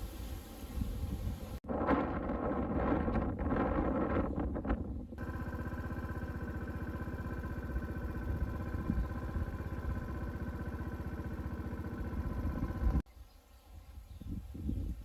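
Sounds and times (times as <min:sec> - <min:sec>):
small motorbike engine running: 0:05.2 - 0:13.0.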